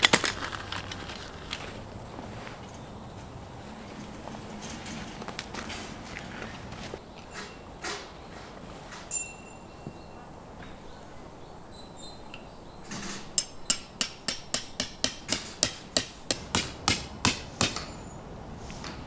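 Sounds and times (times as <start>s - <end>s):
hammer hitting metal tent peg: 12.9s - 18.0s.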